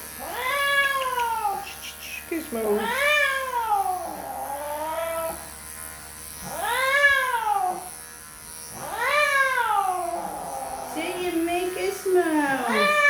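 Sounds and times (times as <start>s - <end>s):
electric clippers buzzing: 0.0s - 13.0s
cat yowling: 0.2s - 1.8s, 2.7s - 5.4s, 6.4s - 7.9s, 8.8s - 11.0s, 12.5s - 13.0s.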